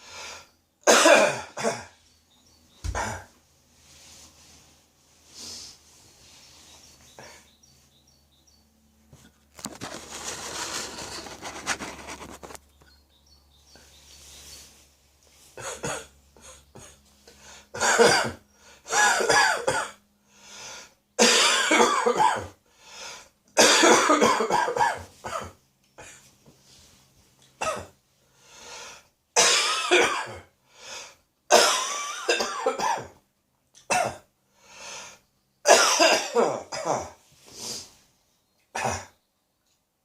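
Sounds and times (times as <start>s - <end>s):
noisy breathing: 0.0s - 0.6s, 3.8s - 7.6s, 17.2s - 17.8s, 18.5s - 18.9s, 20.2s - 21.1s, 22.6s - 23.4s, 28.2s - 29.2s, 30.6s - 31.2s, 34.5s - 35.3s
person coughing: 0.9s - 2.0s, 2.9s - 3.4s, 15.6s - 17.0s, 17.8s - 20.0s, 21.2s - 22.6s, 23.6s - 26.3s, 29.4s - 30.5s, 31.5s - 33.2s, 35.7s - 37.2s, 38.8s - 39.2s.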